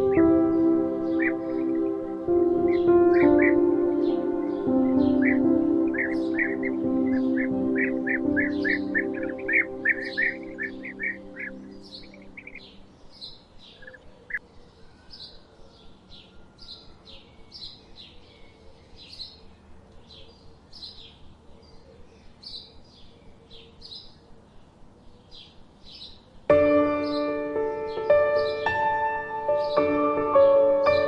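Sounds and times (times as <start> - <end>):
held music chord: 0.0 - 12.9, 26.5 - 31.0
songbird chirping: 0.0 - 31.0.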